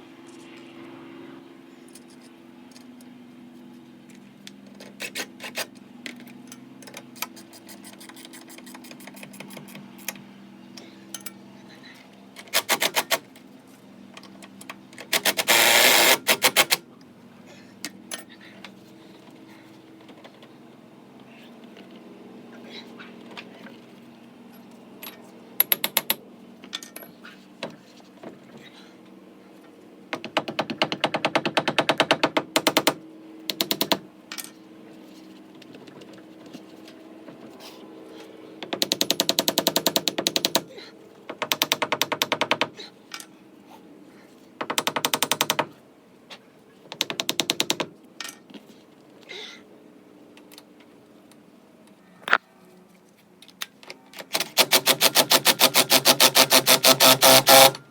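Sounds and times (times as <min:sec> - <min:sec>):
impact wrench hammering: 0:54.3 - 0:57.8.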